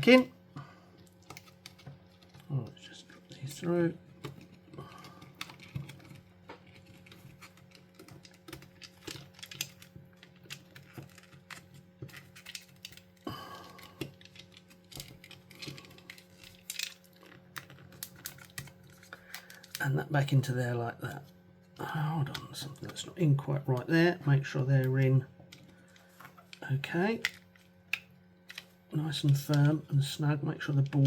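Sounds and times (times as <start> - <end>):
faint steady hum: 0.0 - 31.0
plastic parts clicking and tapping: 3.1 - 19.8.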